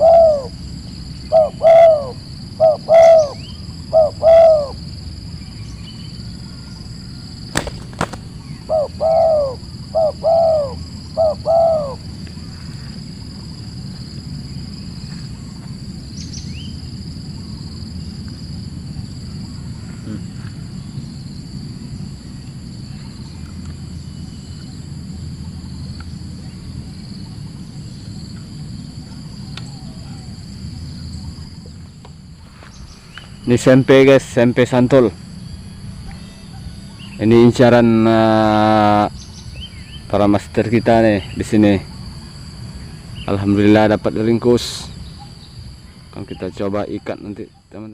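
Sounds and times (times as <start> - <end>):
dove cooing: 0.0 - 5.0, 6.3 - 12.9
high insect drone: 0.0 - 47.9.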